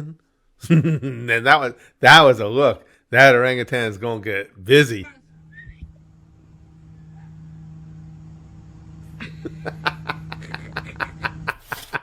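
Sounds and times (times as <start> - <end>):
person laughing: 0.0 - 1.3, 9.2 - 12.0
steady low hum: 3.4 - 12.0.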